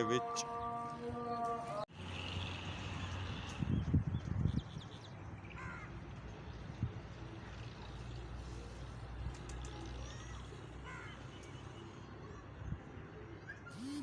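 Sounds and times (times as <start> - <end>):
wind rumbling on microphone: 3.2 - 5.0.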